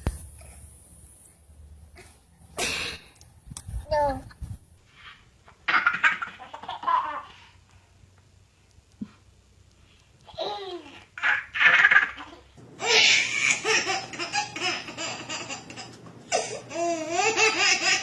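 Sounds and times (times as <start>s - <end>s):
small child laughing: 10.3s - 18.0s.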